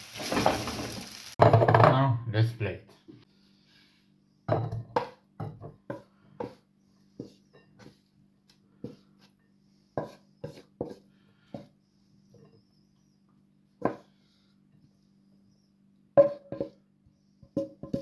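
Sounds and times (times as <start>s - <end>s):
utensil knocking and scraping pan: 10.0s - 11.7s, 16.2s - 16.8s, 17.4s - 18.0s.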